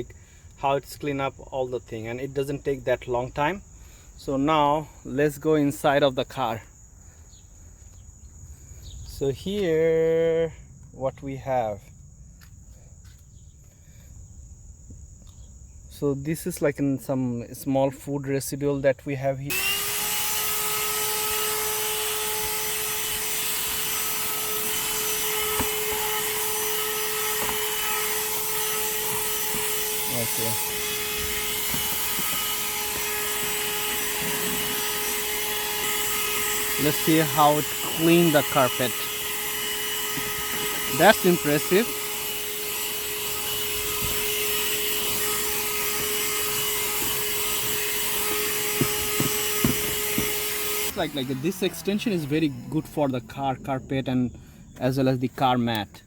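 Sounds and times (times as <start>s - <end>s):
handheld vacuum motor whine: 19.5s - 53.2s
nozzle rubbing over carpet: 21.4s - 51.1s.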